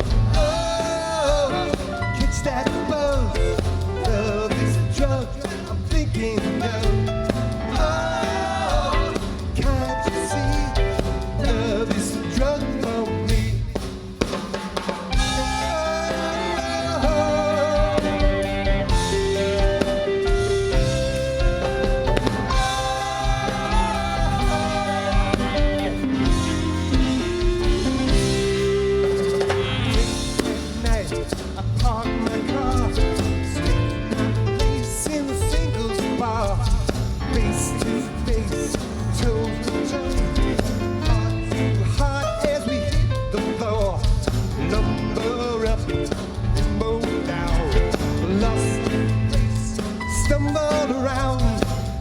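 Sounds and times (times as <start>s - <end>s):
bass guitar: 0.0s - 14.0s, 15.1s - 52.0s
drum kit beat: 0.0s - 52.0s
rock band playing: 0.0s - 52.0s
wavering melodic line: 15.2s - 30.8s.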